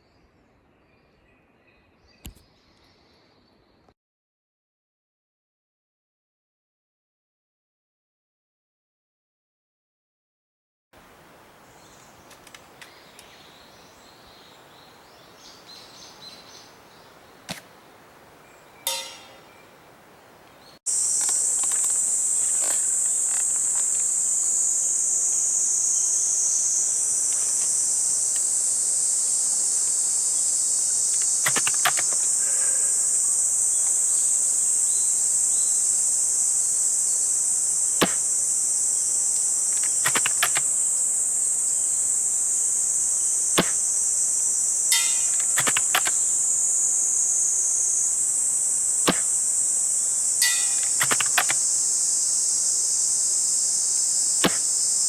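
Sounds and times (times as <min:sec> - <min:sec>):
insect chorus: 0:11.0 - 0:55.0
airsoft rifle shot clicks: 0:31.2 - 0:32.4, 0:38.0 - 0:38.4, 0:39.7 - 0:40.8, 0:43.5 - 0:44.0, 0:44.9 - 0:46.4, 0:49.1 - 0:49.5, 0:50.4 - 0:51.7, 0:54.4 - 0:54.8.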